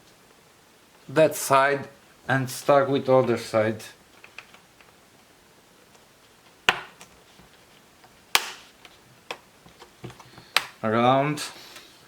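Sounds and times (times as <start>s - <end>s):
plastic clips snapping loose: 8.3s - 8.6s, 10.1s - 10.8s.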